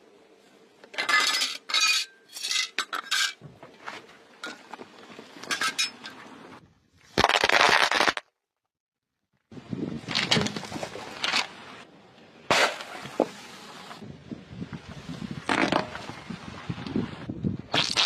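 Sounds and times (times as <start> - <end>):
brittle objects cracking under tyre: 7.2 - 8.3, 17.7 - 18.0.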